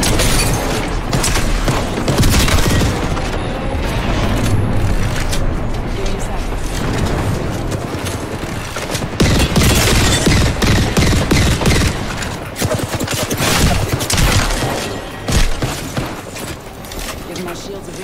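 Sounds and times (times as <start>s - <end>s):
video game gunfire: 6.8s - 16.4s.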